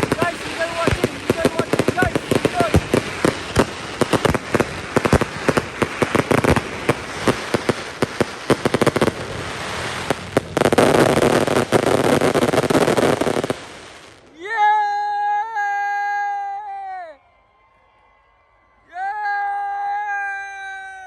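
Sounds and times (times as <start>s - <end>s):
fireworks bangs and crackles: 0.0s - 14.3s.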